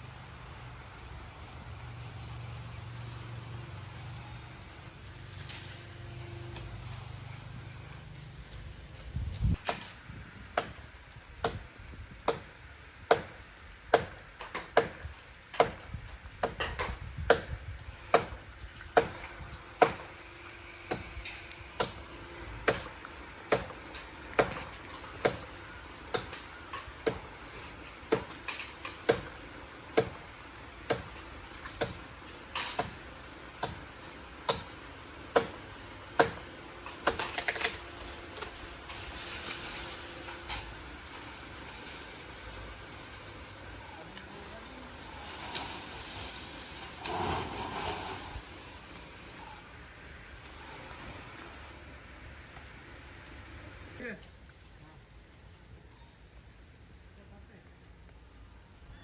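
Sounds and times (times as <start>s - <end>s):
hand tool striking wood: 24.4s - 25.5s
rough scraping: 38.8s - 49.5s.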